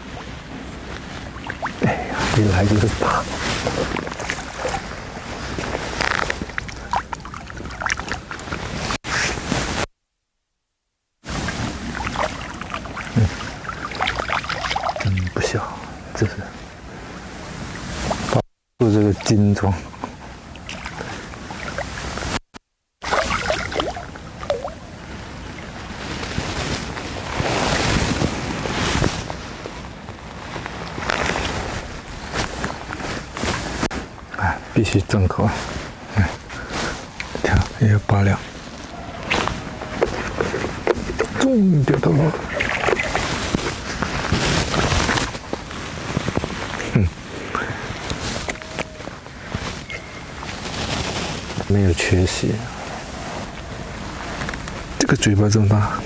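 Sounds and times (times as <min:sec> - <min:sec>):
water splashing: 0:00.0 - 0:09.7, 0:11.3 - 0:15.5, 0:19.0 - 0:22.4, 0:23.0 - 0:29.1, 0:38.5 - 0:47.0
wind noise on microphone: 0:23.3 - 0:34.3, 0:38.5 - 0:51.7.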